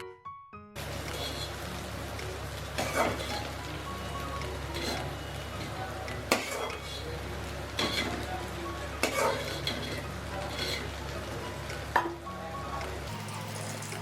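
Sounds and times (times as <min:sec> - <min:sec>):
eggplant sizzling in a pan: 0:00.8 - 0:12.0, 0:13.0 - 0:14.0
utensil clinking against pan: 0:09.0 - 0:10.9.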